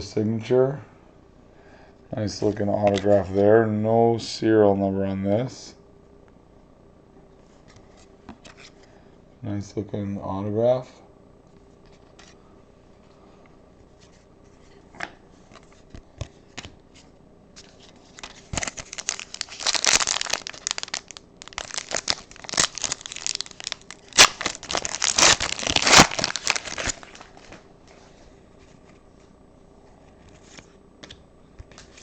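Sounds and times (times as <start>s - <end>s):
foil wrapper crinkling: 17.6s - 27.6s.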